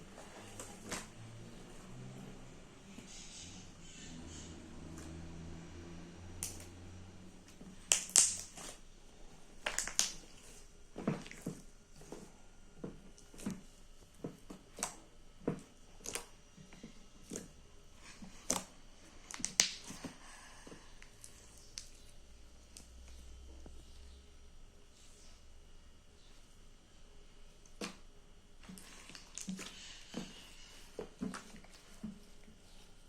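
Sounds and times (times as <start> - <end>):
slime clicking and popping: 7.8 - 8.8, 9.6 - 10.2, 19.2 - 19.9.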